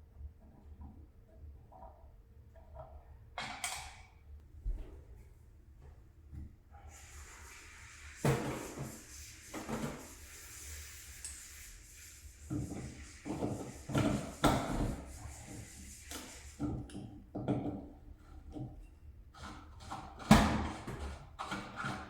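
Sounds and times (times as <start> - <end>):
handling scraping and rubbing: 6.9 - 16.9.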